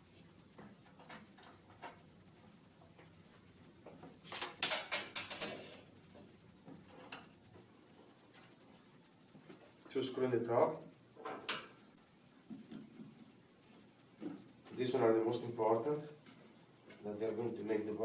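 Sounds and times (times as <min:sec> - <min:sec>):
clatter of clicks and scrapes: 0:04.2 - 0:05.9.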